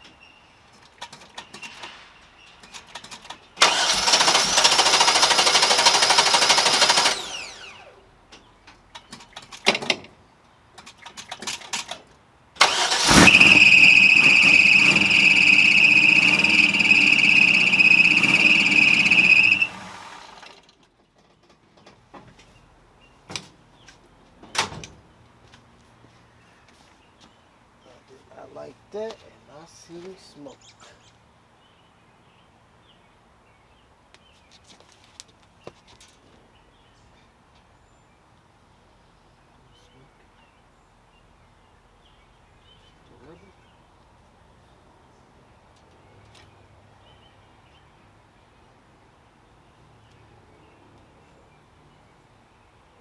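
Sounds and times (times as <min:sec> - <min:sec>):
car engine starting: 0:03.1 - 0:07.8, 0:12.6 - 0:20.6
high-pitched belt squeal: 0:12.6 - 0:20.5.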